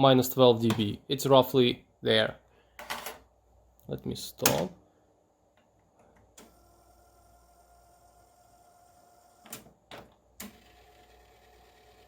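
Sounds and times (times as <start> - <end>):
cassette mechanism whirring: 6.2 - 12.0.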